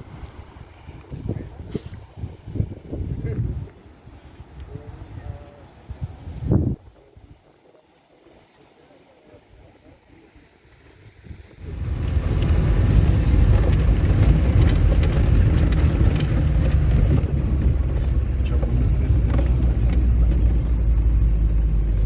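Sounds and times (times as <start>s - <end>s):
vehicle engine rumble on rough track: 0.0s - 22.0s
rattles and knocks: 11.9s - 21.0s.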